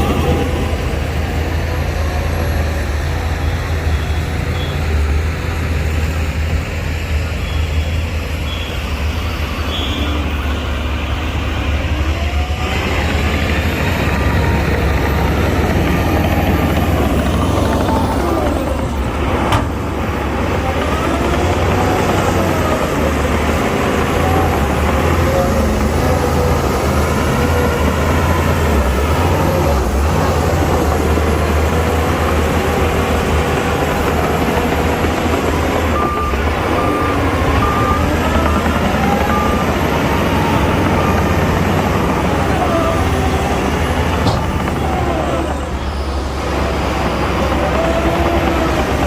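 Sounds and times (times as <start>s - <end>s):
diesel earthmoving machinery running: 0.0s - 49.0s
reversing alarm beeping: 7.4s - 14.2s, 34.6s - 46.2s.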